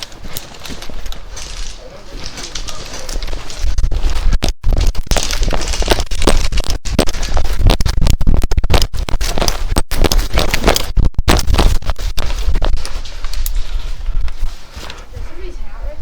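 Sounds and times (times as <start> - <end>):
gear rattling: 0.0 - 14.5
rapid running footfalls: 0.0 - 15.2
microphone rubbing: 0.0 - 15.9.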